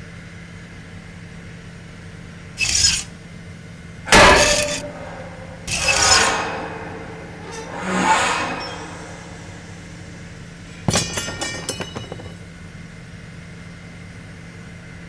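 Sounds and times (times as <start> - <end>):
crash: 2.6 - 3.1, 4.1 - 12.5
steady low hum: 4.1 - 12.4
clinking and tinkling pieces: 10.8 - 12.4.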